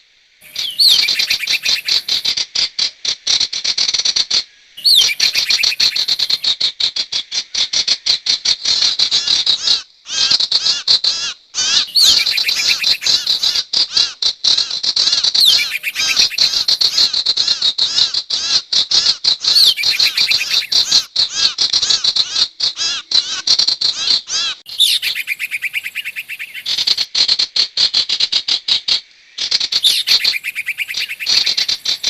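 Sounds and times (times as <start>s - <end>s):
bird chattering high chirps: 0.4s - 2.3s, 4.8s - 6.5s, 9.1s - 13.6s, 15.4s - 18.6s, 19.4s - 27.1s, 29.4s - 32.0s.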